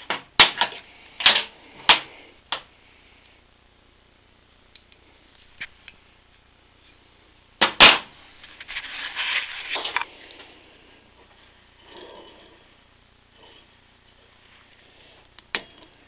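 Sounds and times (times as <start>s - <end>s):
metal parts scraping and rattling: 8.4s - 10.1s.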